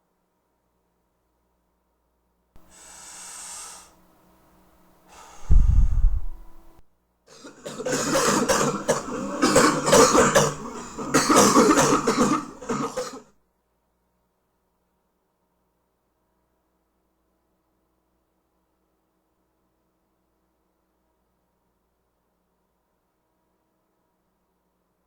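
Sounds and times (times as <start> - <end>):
person drawing breath: 2.6 - 4.0, 5.1 - 6.6
person coughing: 7.4 - 13.2.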